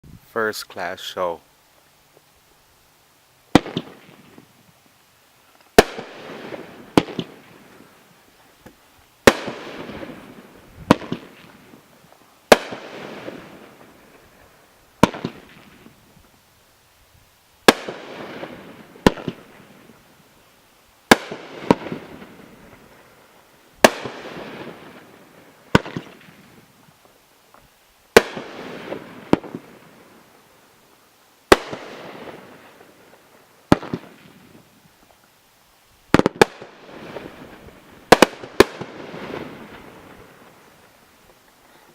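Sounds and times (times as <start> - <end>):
firework cake reports: 0.2 - 1.5.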